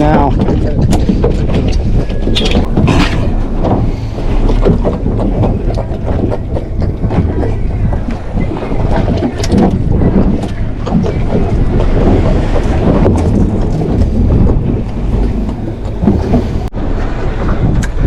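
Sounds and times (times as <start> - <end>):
wind buffeting microphone: 0.0 - 18.0
knocks and clatter on deck: 4.5 - 11.2.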